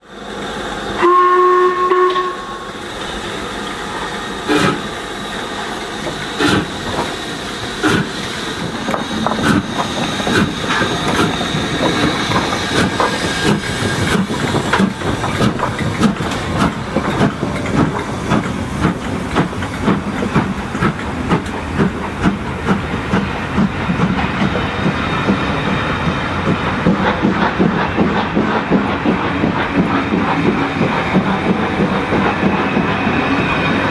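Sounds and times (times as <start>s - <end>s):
steam locomotive chuffing: 0.0s - 33.9s
train wheels on rails: 0.0s - 33.9s
steam hiss: 0.1s - 33.9s
steam locomotive whistle: 0.9s - 2.9s.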